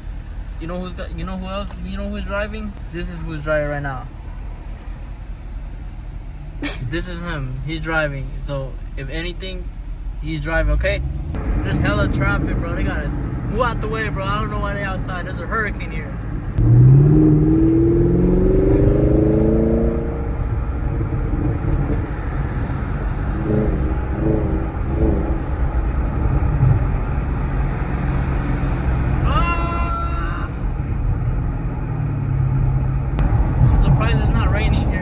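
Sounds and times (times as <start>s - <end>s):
car engine accelerating: 0.0s - 35.0s
road rumble in cabin: 0.0s - 35.0s
short rising pitched sound: 16.5s - 22.1s.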